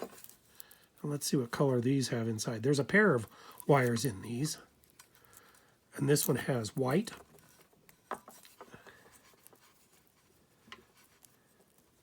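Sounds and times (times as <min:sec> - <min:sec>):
light rubbing of foil: 0:08.4 - 0:12.0.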